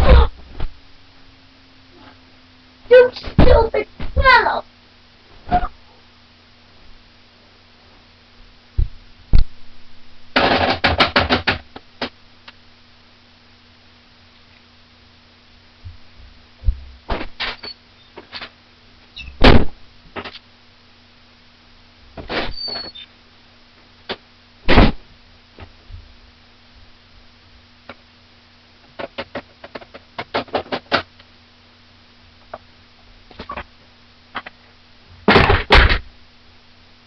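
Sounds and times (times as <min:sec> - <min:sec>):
knocks and thumps: 0:08.8 - 0:09.5, 0:10.4 - 0:12.2, 0:15.8 - 0:18.5, 0:19.4 - 0:20.4, 0:35.3 - 0:36.1.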